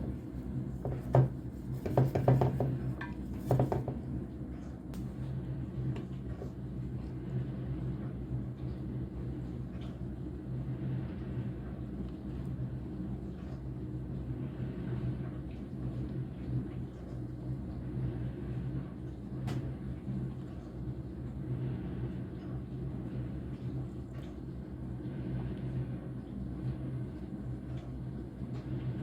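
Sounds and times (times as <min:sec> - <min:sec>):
low mechanical hum: 0:00.0 - 0:29.0.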